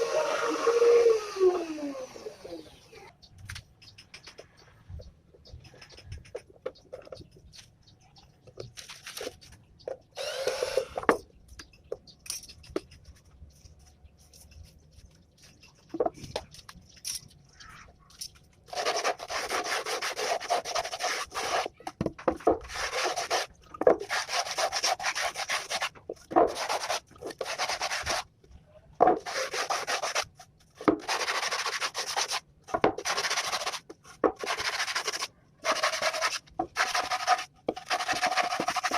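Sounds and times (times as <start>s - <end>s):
small handling noises: 3.1s - 10.2s, 11.0s - 18.7s
sandpaper rubbing on plywood: 18.7s - 21.8s, 22.6s - 25.9s, 26.5s - 28.2s, 29.2s - 30.3s, 31.0s - 32.4s, 33.0s - 33.8s, 34.4s - 38.9s.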